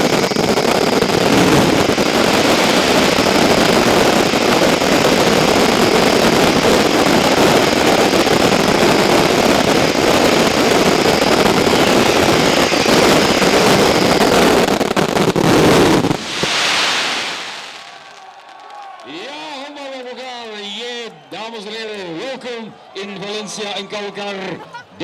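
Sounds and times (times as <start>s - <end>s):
firecracker blasts barrage: 0.0s - 19.9s
crowd applause and cheering: 16.1s - 24.7s.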